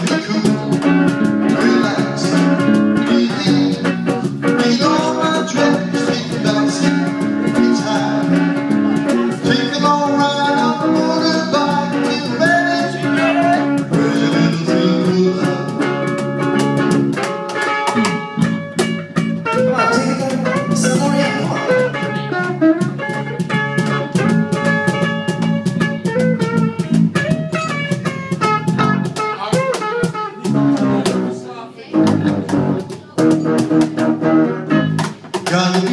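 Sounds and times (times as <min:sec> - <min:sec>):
person singing: 0:00.0 - 0:16.2, 0:19.5 - 0:22.1, 0:35.4 - 0:35.9
drums: 0:00.0 - 0:31.4, 0:32.0 - 0:35.9
guitar: 0:00.0 - 0:35.9.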